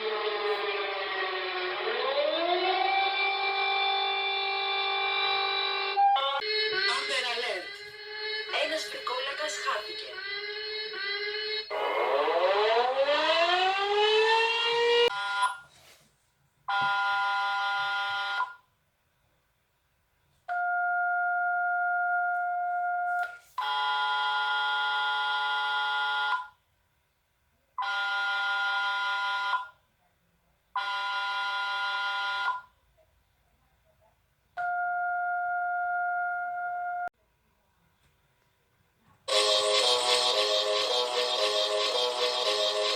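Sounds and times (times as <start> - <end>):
rising siren-like sweep: 0.0 - 15.1.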